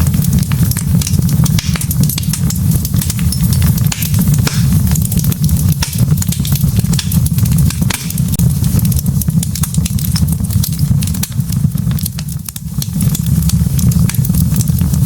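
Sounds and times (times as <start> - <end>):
low rumble of flames: 0.0 - 15.0
wood fire crackling and popping: 0.0 - 15.0.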